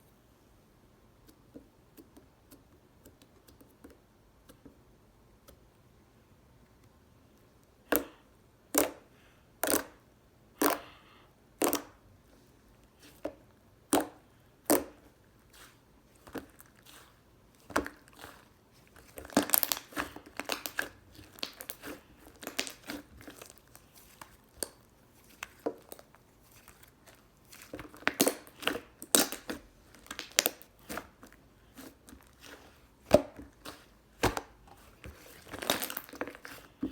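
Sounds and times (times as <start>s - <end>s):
slime popping and crackling: 17.6s - 36.9s.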